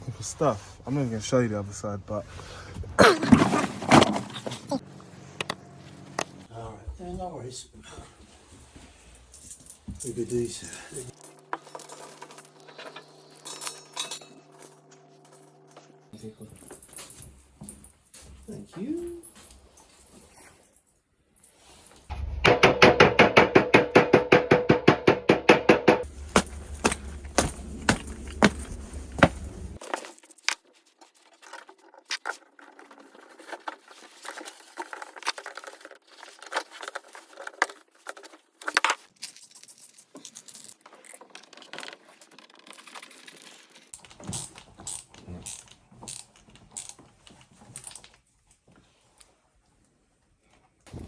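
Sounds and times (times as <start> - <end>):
steady low hum: 26.0 - 29.8.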